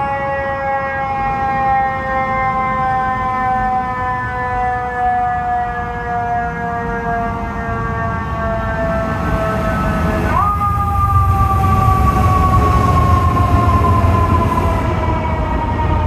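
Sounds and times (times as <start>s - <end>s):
fire truck siren wailing: 0.0s - 16.0s
truck rumbling: 8.0s - 16.0s.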